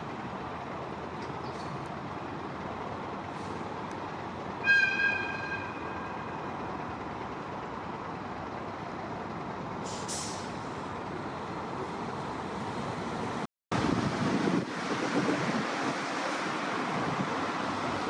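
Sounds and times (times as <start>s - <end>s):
heavy vehicle engine running: 0.0s - 15.6s
air brake hiss: 9.8s - 10.7s.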